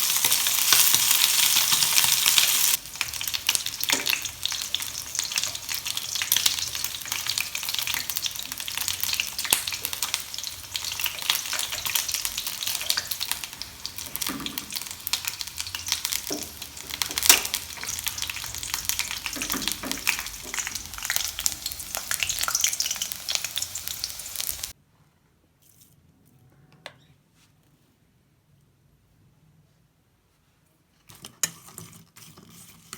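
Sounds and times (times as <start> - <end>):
food sizzling in hot oil: 0.0 - 24.8.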